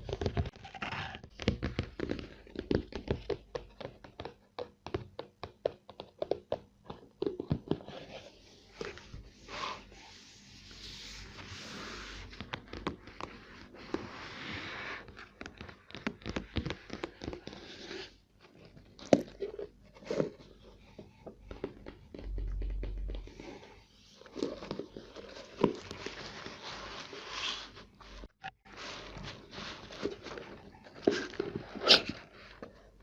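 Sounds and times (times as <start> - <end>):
low hum: 22.1 - 23.7.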